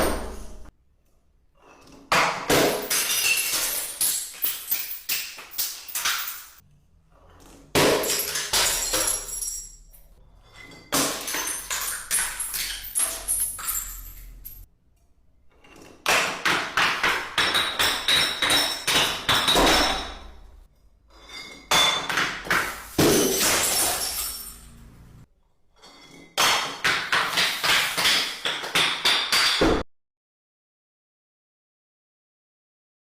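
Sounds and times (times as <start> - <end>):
glass shattering: 2.4 - 6.6, 7.7 - 14.7, 17.4 - 20.6, 21.2 - 25.0.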